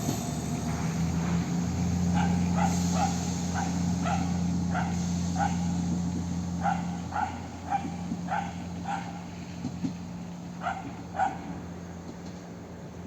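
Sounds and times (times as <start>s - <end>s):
diesel engine hum: 0.0s - 13.0s
dog barking: 2.1s - 5.7s, 6.6s - 9.2s, 10.6s - 11.5s.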